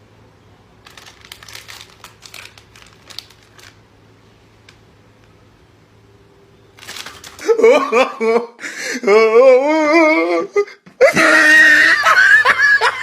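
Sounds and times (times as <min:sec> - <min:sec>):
crinkling and rustling: 0:00.8 - 0:03.9, 0:06.8 - 0:07.5.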